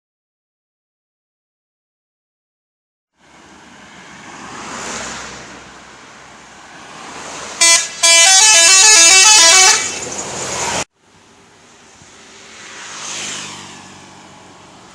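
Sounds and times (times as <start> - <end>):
vehicle noise: 3.1 - 14.9
multi-tone air horn tune: 7.6 - 10.0.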